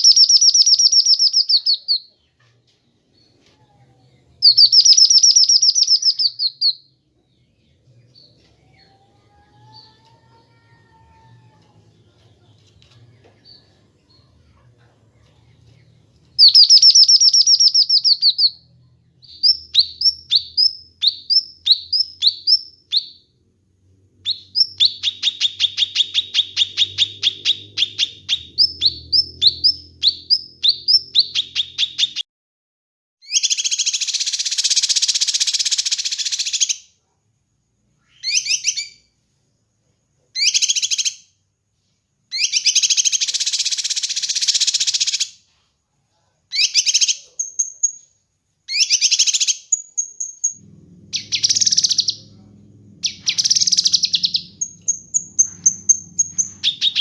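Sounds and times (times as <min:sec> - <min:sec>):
bird singing trills: 0:00.0 - 0:02.4, 0:04.4 - 0:10.3, 0:16.4 - 0:18.6, 0:24.2 - 0:32.2, 0:48.7 - 0:57.0
harsh buzzy bird call: 0:50.5 - 0:52.3, 0:53.0 - 0:57.0.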